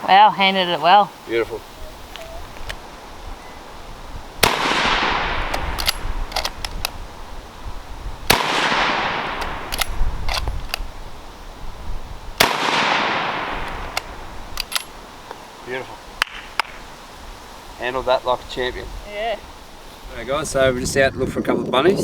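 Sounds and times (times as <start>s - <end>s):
rifle shots with echo: 4.4s - 6.5s, 8.3s - 10.0s, 12.4s - 14.3s
rifle clicks: 4.4s - 7.0s, 9.3s - 10.9s, 13.6s - 15.0s.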